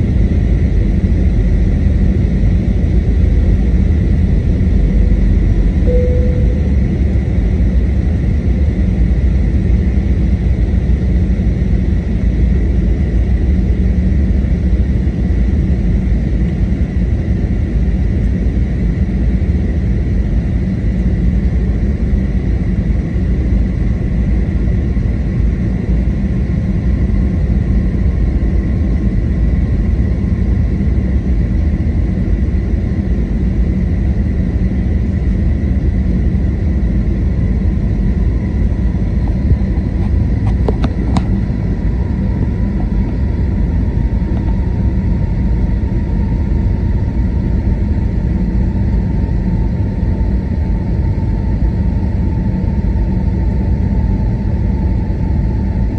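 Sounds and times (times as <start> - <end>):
airplane cabin engine rumble: 0.0 - 55.9
faint high whine: 3.6 - 8.0.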